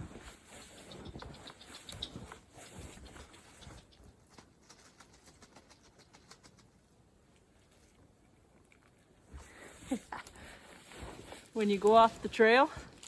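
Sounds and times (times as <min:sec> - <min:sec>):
footsteps crunching through snow: 0:00.0 - 0:03.8, 0:10.4 - 0:13.0.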